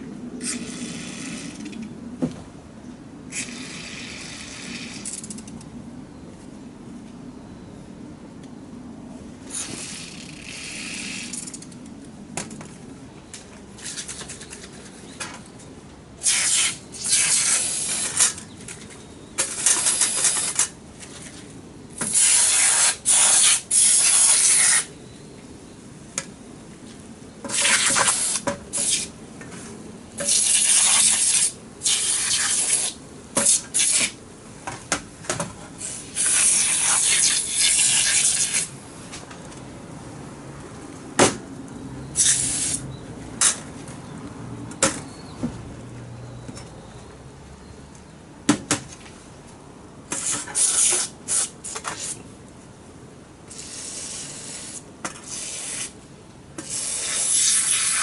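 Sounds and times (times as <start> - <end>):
aerosol spray hissing bursts: 42.2 - 42.8, 56.6 - 58.0.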